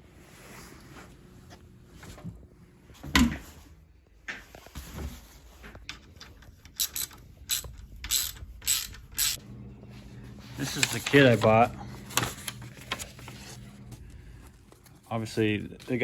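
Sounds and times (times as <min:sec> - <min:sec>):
ratcheting clicks: 0:05.9 - 0:09.4.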